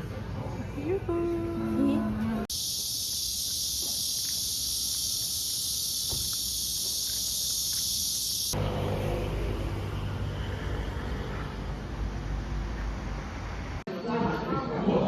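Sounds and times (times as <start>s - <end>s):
high-pitched insect chorus: 2.5s - 8.6s.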